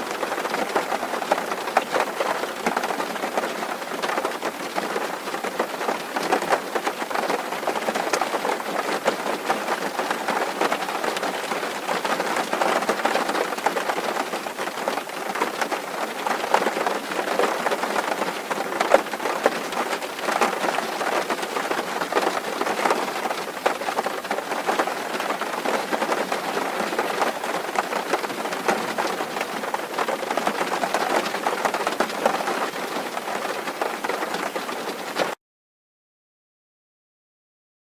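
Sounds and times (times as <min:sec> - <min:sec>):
rain on a metal roof: 0:00.0 - 0:35.4.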